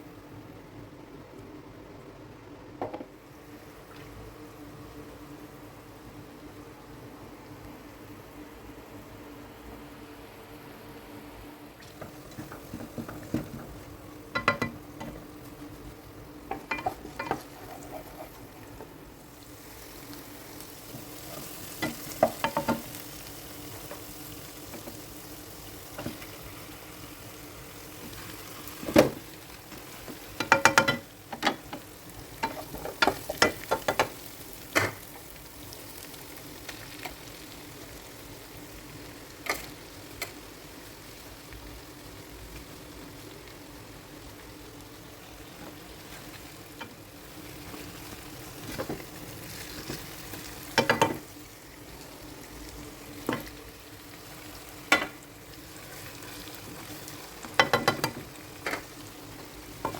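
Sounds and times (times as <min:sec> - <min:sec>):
food sizzling in a wok: 0:01.5 - 0:59.9
metal spatula scraping a pan: 0:16.7 - 0:18.5.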